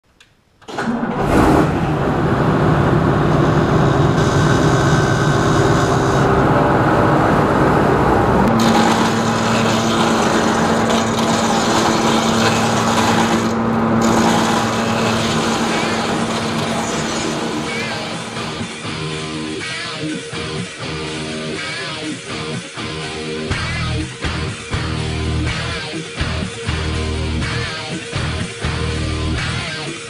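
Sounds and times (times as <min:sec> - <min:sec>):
farm machinery engines running: 0:00.7 - 0:19.6
steady hum: 0:00.7 - 0:20.5.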